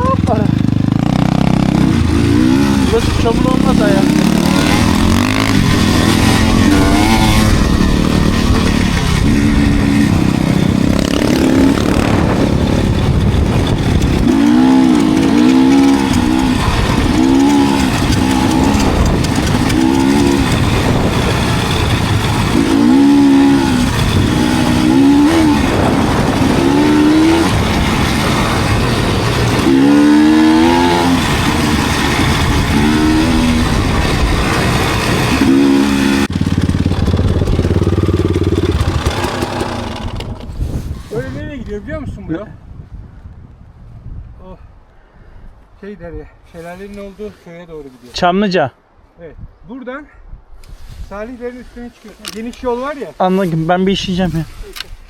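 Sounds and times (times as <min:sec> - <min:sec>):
dirt bike engine revving: 0:00.0 - 0:41.3
steady rumble: 0:00.0 - 0:41.6
wind noise: 0:01.7 - 0:47.4, 0:48.8 - 0:52.9.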